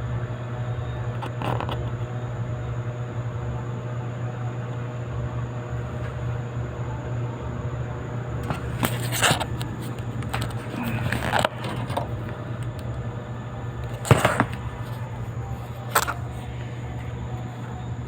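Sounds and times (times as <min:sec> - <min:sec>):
low mechanical hum: 0:00.0 - 0:18.0
sharp knocks and clatters: 0:13.9 - 0:15.1.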